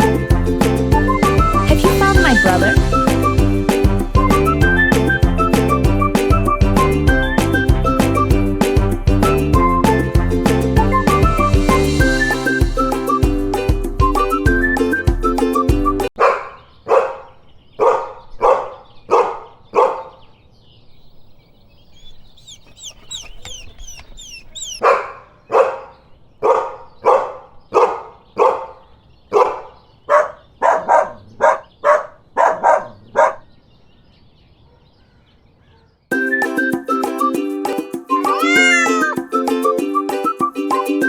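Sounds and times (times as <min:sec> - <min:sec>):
dog barking: 0:16.2 - 0:20.2, 0:22.4 - 0:33.5, 0:34.6 - 0:35.0
high chirps: 0:21.7 - 0:24.9.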